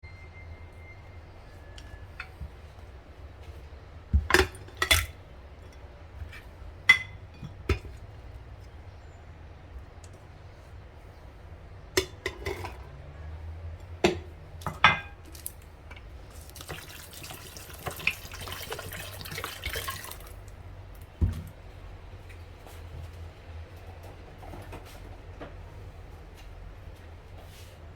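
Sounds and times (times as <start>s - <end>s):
kitchen utensils clinking: 4.3s - 5.8s, 6.9s - 7.9s, 12.0s - 13.0s, 14.1s - 20.3s
water running from a tap: 16.3s - 20.5s.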